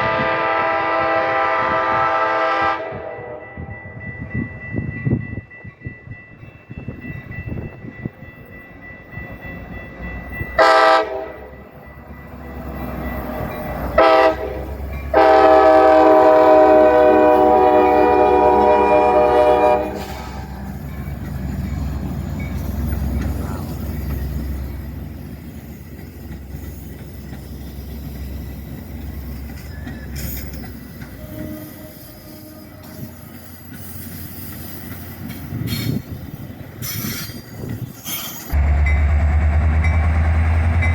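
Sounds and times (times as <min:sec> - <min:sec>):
locomotive horn blasts: 0:00.0 - 0:03.7, 0:10.6 - 0:11.5, 0:13.9 - 0:20.6, 0:31.0 - 0:33.3
passing train rumble: 0:00.0 - 0:40.9.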